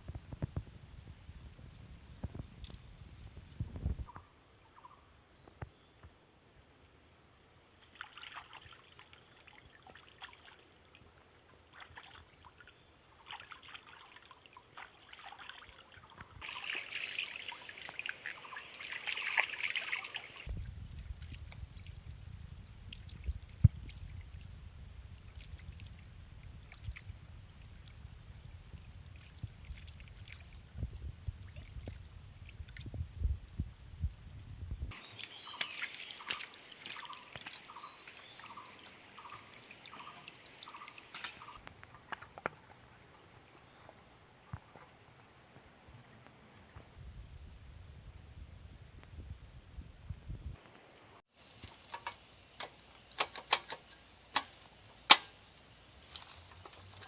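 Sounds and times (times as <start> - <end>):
water trickling and splashing: 7.8 - 22.2, 22.8 - 33.0, 34.9 - 45.0, 51.3 - 57.0
small clicks and knocks: 51.8 - 55.3.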